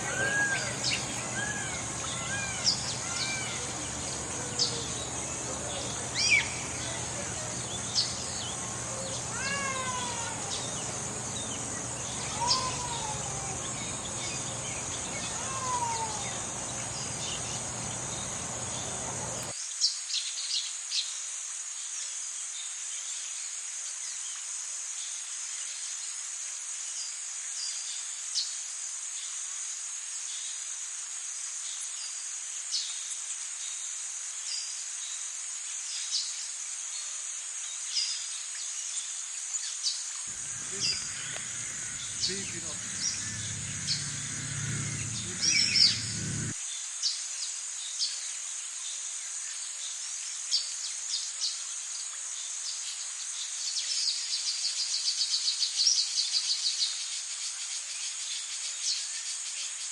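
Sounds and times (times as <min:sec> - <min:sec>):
bird chirps: 0:00.0 - 0:19.5, 0:40.3 - 0:46.6
falling calls: 0:00.0 - 0:19.5, 0:40.3 - 0:46.6
insects chirping: 0:00.0 - 0:19.5, 0:40.3 - 0:46.6
low background hum: 0:00.0 - 0:19.5, 0:40.3 - 0:46.6.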